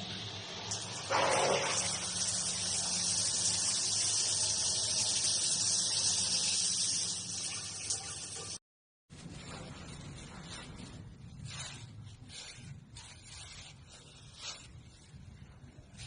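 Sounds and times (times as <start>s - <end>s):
water running: 0.0s - 8.6s.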